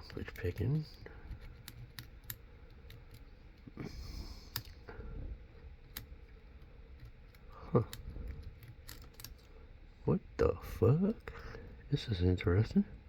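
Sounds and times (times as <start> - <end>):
lock pick clicking in a lock: 7.0 - 9.5.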